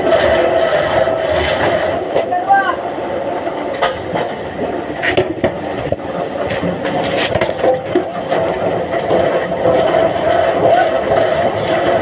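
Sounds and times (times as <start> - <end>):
machinery running: 0.0 - 12.0
wooden logs knocking and scraping: 3.7 - 12.0.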